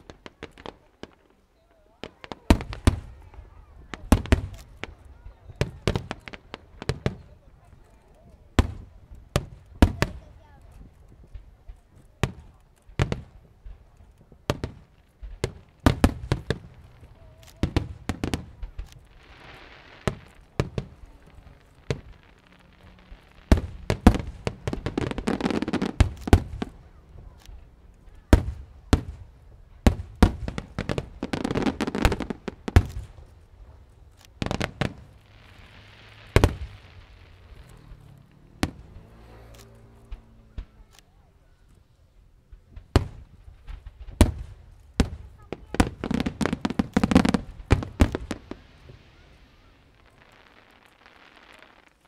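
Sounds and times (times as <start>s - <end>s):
fireworks bangs: 0.0s - 52.0s
fireworks hissing: 14.6s - 27.4s, 29.9s - 40.9s, 42.8s - 52.0s.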